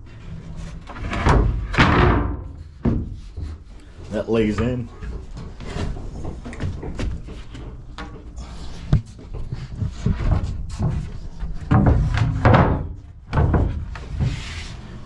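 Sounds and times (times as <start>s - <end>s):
scraping of hatch doors: 0.0s - 15.0s
hollow knocks of boat hatches: 1.0s - 3.7s, 5.0s - 14.3s.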